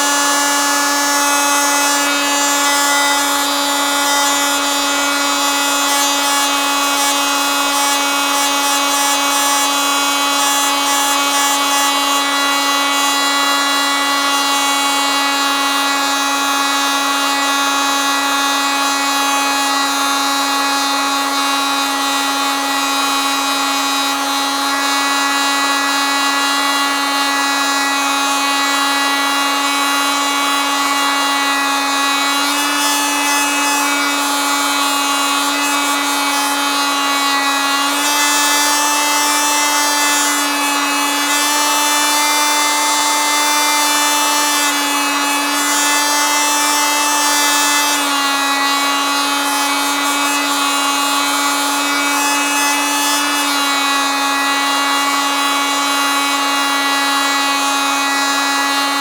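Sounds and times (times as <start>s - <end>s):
oscillating multitool buzzing: 24.8s - 59.0s.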